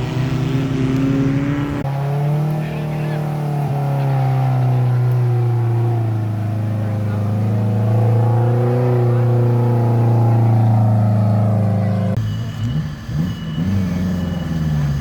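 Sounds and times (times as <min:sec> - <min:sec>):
off-road vehicle engine running: 0:00.0 - 0:15.0.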